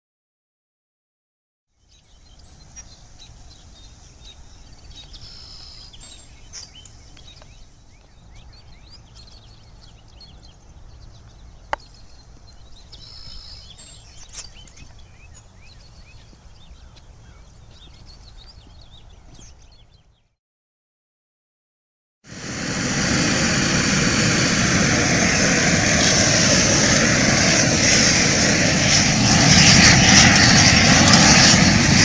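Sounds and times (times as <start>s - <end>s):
songbirds chirping and singing: 1.8s - 20.3s
steady low rumble: 22.3s - 32.0s.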